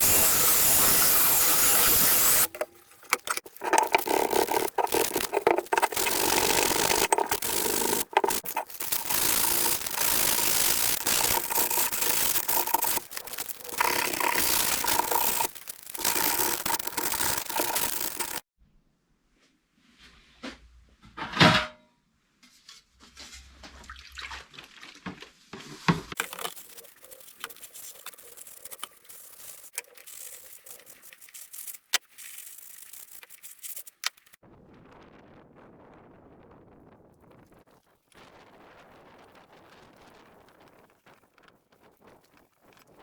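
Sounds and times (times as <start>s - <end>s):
aerosol spray paint hissing: 0.0s - 2.5s
choppy scraping and rubbing: 0.0s - 18.4s, 26.2s - 34.4s.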